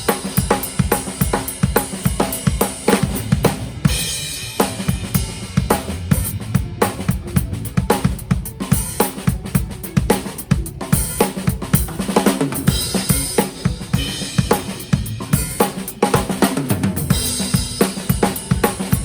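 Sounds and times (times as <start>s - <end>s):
drum kit groove: 0.0s - 19.0s
cymbals ringing: 2.3s - 7.8s.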